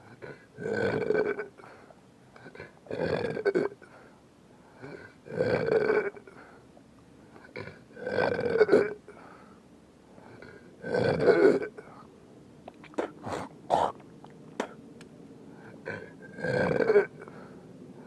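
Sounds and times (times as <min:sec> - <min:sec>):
person belching loudly: 0:00.3 - 0:01.6, 0:02.6 - 0:03.8, 0:05.3 - 0:06.3, 0:07.5 - 0:09.0, 0:10.8 - 0:11.8, 0:12.9 - 0:14.0, 0:15.8 - 0:17.3.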